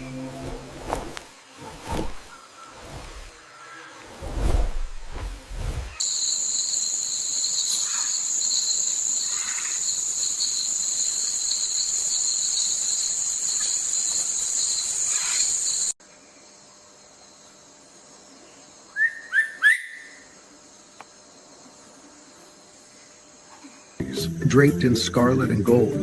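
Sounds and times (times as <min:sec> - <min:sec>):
insects shrill droning: 0:06.0 - 0:24.0.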